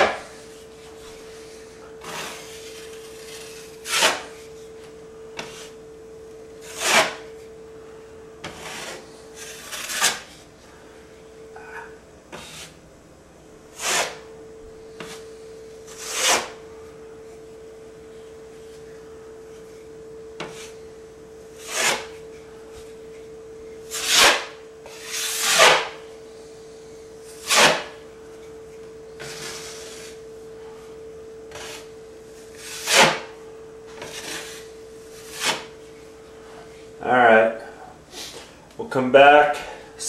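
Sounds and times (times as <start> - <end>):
drywall knife scraping compound: 0.0 - 4.7, 5.4 - 5.8, 6.6 - 7.4, 8.4 - 10.4, 11.7 - 12.8, 13.7 - 14.3, 15.0 - 16.6, 21.5 - 22.3, 23.8 - 26.0, 27.3 - 28.0, 29.2 - 30.2, 31.5 - 33.4, 34.0 - 35.8
faint steady hum: 0.0 - 40.0.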